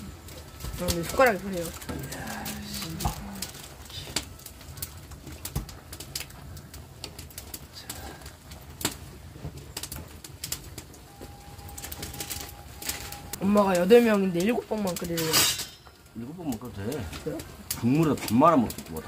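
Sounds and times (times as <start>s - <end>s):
faint steady tone: 11.0s - 13.7s.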